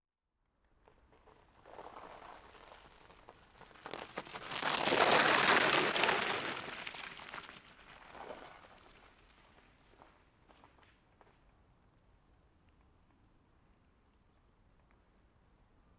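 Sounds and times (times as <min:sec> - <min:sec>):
bicycle tyres rolling: 0:00.7 - 0:11.4
thin ice cracking: 0:04.0 - 0:07.4.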